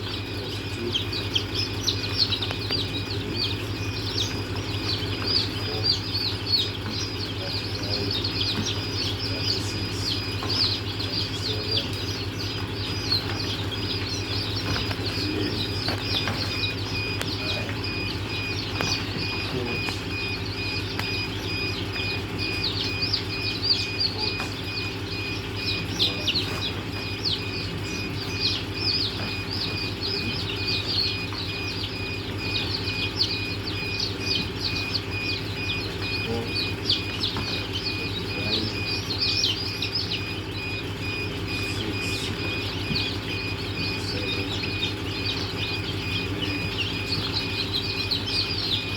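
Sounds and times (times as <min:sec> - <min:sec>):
chicks peeping: 0:00.0 - 0:48.9
steady low hum: 0:00.0 - 0:48.9.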